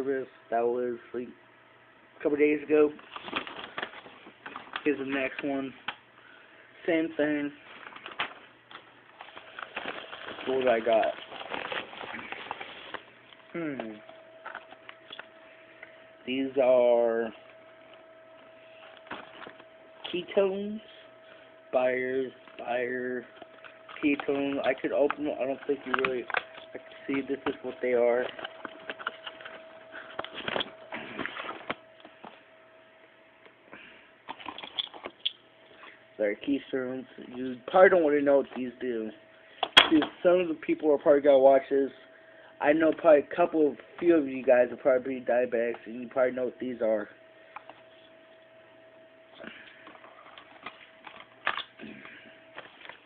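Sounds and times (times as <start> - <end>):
faint steady hum: 0.0 - 53.0
box rustling and clicking: 7.8 - 13.1, 23.3 - 31.8.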